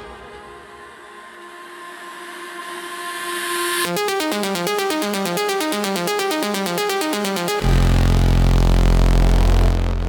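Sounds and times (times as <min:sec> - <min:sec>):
held synth tones: 0:03.9 - 0:09.8
techno bass and beat: 0:03.9 - 0:10.0.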